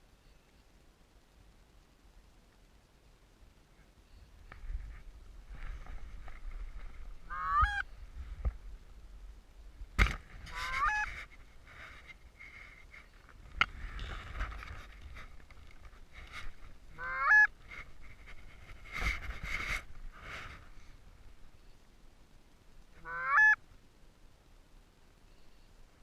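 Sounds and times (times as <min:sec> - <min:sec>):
goose cackling clucks: 0:07.2 - 0:07.9, 0:10.5 - 0:11.3, 0:16.9 - 0:17.6, 0:23.0 - 0:23.6
goose honking: 0:07.2 - 0:07.9, 0:10.5 - 0:11.3, 0:16.9 - 0:17.6, 0:23.0 - 0:23.6.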